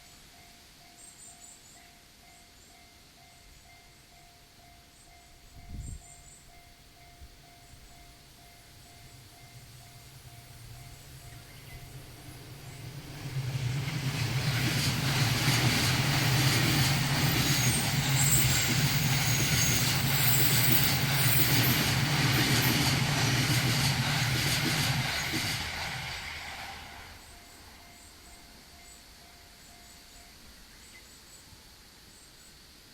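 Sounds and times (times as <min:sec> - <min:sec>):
train wheels clattering over rail joints: 0:13.3 - 0:26.8
crossing warning bell ringing: 0:15.4 - 0:23.5.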